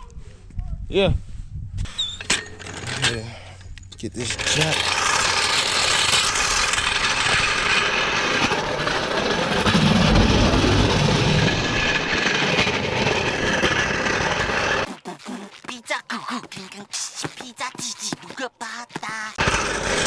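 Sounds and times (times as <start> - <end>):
floor jack rattling on pavement: 2.0 - 14.9, 19.0 - 20.0.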